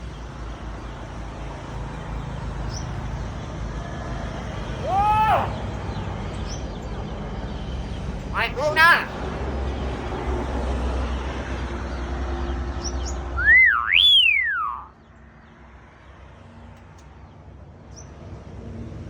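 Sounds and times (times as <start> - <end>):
loud swooping whistle: 13.4 - 14.9.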